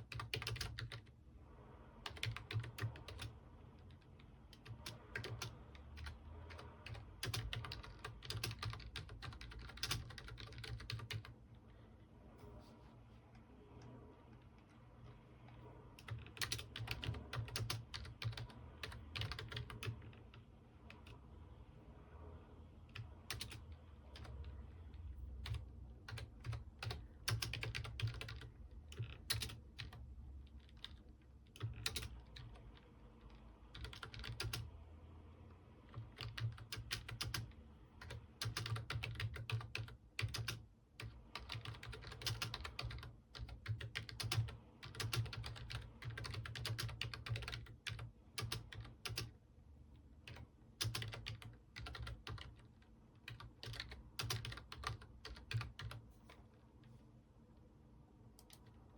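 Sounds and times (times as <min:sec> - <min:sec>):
typing on computer keyboard: 0:00.0 - 0:01.1, 0:02.0 - 0:11.4, 0:16.0 - 0:21.2, 0:22.9 - 0:24.6, 0:25.4 - 0:34.7, 0:35.9 - 0:49.4, 0:50.2 - 0:56.5, 0:58.4 - 0:58.8.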